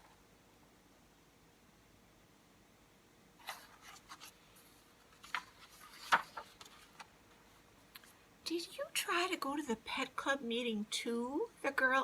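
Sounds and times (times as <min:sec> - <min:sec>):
book pages rustling: 0:03.4 - 0:07.4.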